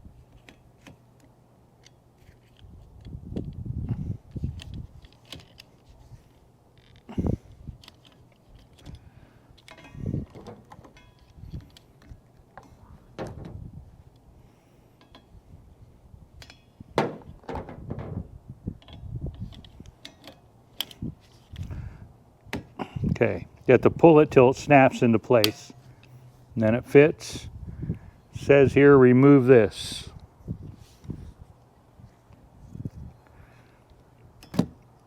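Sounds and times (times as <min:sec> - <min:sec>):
wiper blade clicks and rustling: 0:04.3 - 0:13.5, 0:18.8 - 0:21.7.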